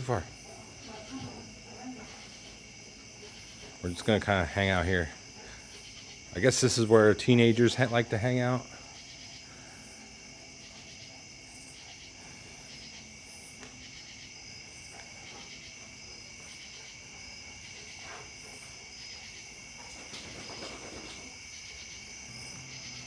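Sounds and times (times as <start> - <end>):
insects trilling: 0.0 - 23.0.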